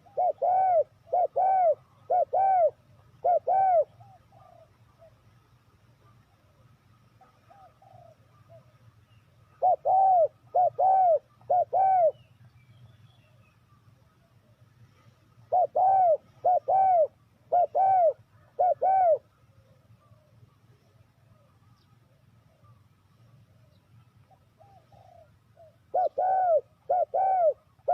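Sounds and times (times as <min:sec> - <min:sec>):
dove cooing: 0:00.0 - 0:05.3, 0:07.2 - 0:08.9, 0:09.5 - 0:12.3, 0:15.4 - 0:22.8, 0:23.6 - 0:27.9.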